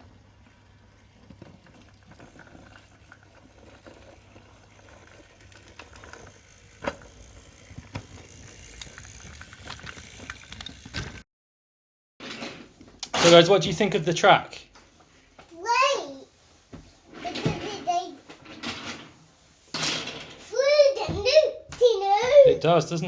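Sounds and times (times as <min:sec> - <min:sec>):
toy train motor whir: 0:02.2 - 0:11.2
clicks and taps on toy track: 0:05.4 - 0:11.2.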